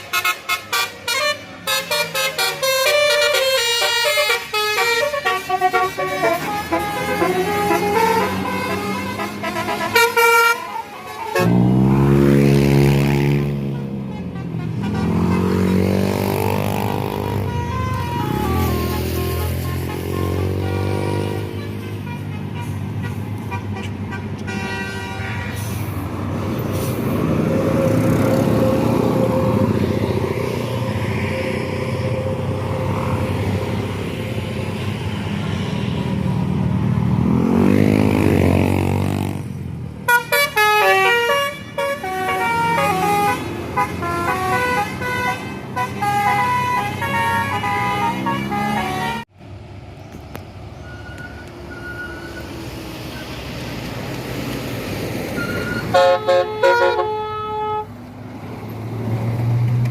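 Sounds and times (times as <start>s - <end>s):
multi-tone bus horn melody: 0.0s - 26.0s, 40.0s - 49.3s, 55.4s - 58.2s
bus engine and road noise: 0.0s - 59.9s.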